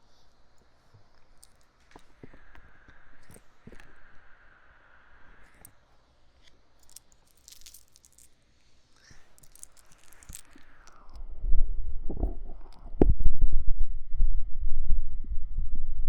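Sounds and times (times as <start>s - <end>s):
faint breathy hiss: 0.0s - 11.2s
quiet rustling: 5.5s - 11.2s.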